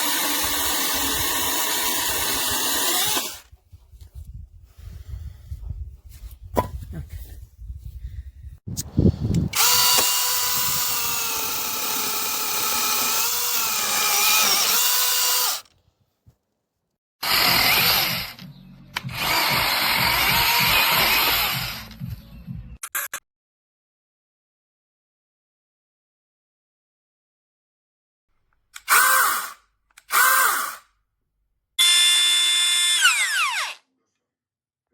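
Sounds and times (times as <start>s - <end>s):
mini chainsaw motor whining: 0.0s - 3.5s, 9.5s - 15.7s, 17.2s - 18.4s, 19.0s - 21.9s, 28.8s - 30.8s, 31.8s - 33.8s.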